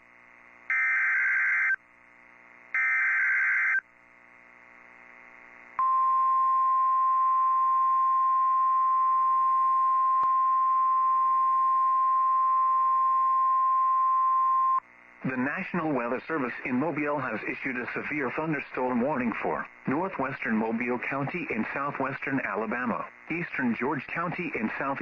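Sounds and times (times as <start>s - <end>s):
faint radio hiss: 14.8s - 25.0s.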